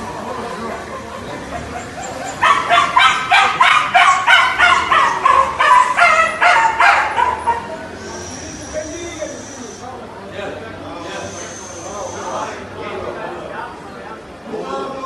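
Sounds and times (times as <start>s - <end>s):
puppy yelping: 1.3s - 8.4s.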